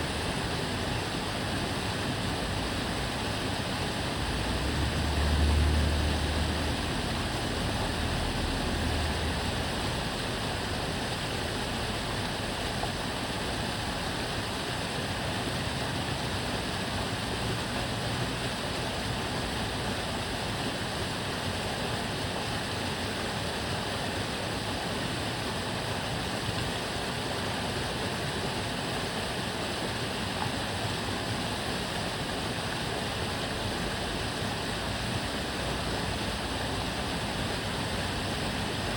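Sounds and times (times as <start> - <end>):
water rushing in a canal: 0.0 - 38.9
passing car rumble: 4.0 - 10.2.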